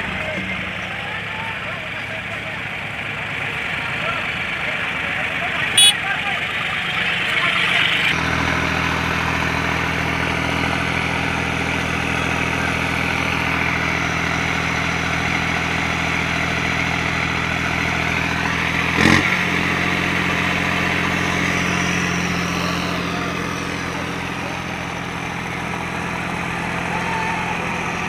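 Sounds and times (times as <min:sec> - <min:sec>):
heavy vehicle engine running: 0:00.0 - 0:28.0.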